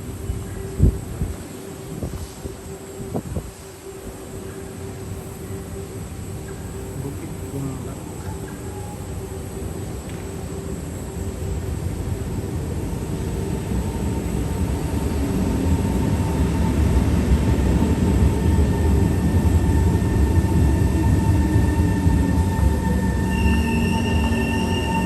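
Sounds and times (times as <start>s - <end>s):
train rumbling past: 0.0s - 25.0s
high metallic wheel squeal: 19.7s - 25.0s.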